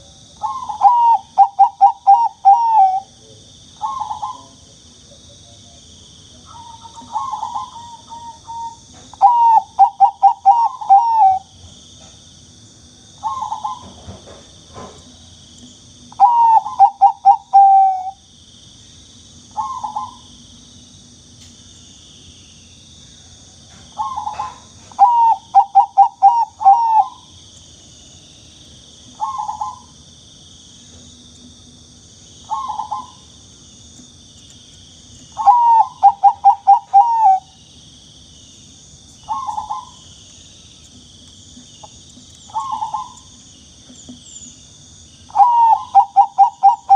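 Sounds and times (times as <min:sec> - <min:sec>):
dove cooing: 0:00.0 - 0:03.2, 0:03.8 - 0:04.6, 0:06.5 - 0:11.5, 0:13.2 - 0:14.0, 0:16.2 - 0:18.2, 0:19.6 - 0:20.3, 0:24.0 - 0:27.3, 0:29.1 - 0:30.0, 0:32.5 - 0:33.2, 0:35.4 - 0:37.5, 0:39.3 - 0:40.0, 0:42.5 - 0:43.3, 0:45.3 - 0:46.9.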